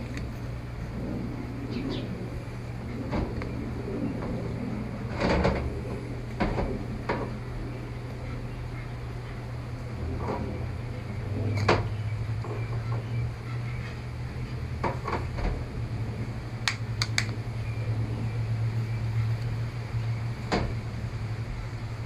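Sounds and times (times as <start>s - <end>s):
steady low hum: 0.0s - 22.0s
plastic clicks and taps: 16.7s - 17.4s.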